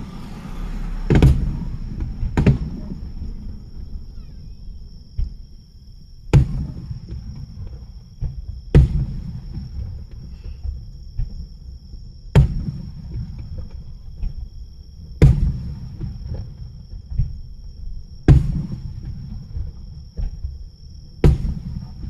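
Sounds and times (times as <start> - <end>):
fireworks booming: 0.0 - 6.9.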